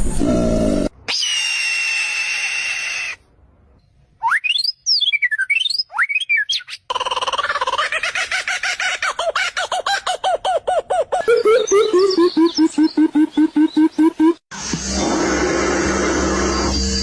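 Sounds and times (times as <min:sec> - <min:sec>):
bird calls: 0:11.0 - 0:14.3.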